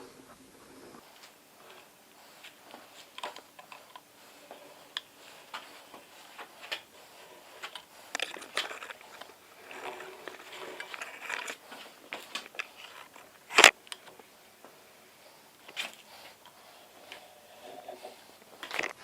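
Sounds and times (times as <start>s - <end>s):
metal parts scraping: 1.6s - 13.8s.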